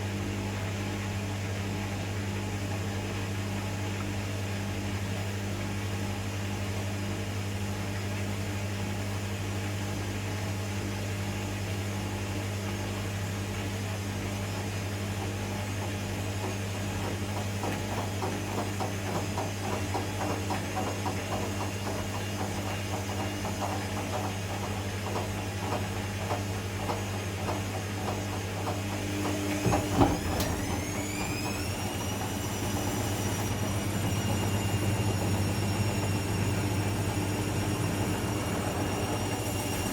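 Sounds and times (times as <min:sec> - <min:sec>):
washing machine humming: 0:00.0 - 0:39.9
washing machine drum knocking: 0:17.0 - 0:34.1
drum motor whine: 0:25.7 - 0:39.9.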